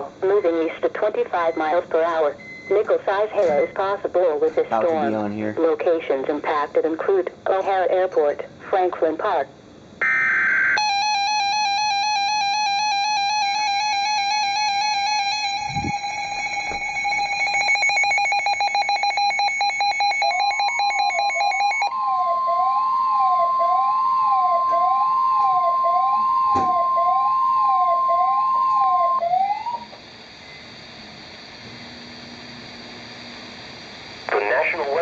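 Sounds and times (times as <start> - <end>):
faint hum: 0.0 - 35.0
siren-like sweeping tone: 10.0 - 18.0, 21.5 - 30.0
pulsing buzzy electronic tone: 10.0 - 25.0
steady alert tone: 14.2 - 18.1.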